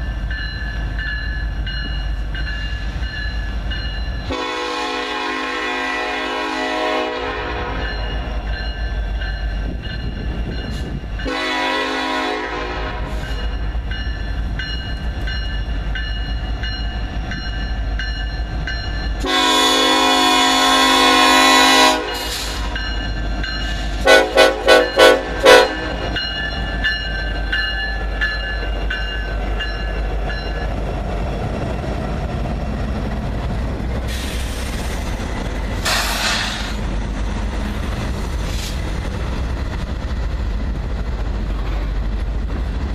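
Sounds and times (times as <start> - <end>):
train rumbling: 0.0 - 42.9
locomotive horn blasts: 4.3 - 7.9, 11.2 - 13.2, 19.2 - 22.7, 24.0 - 26.2.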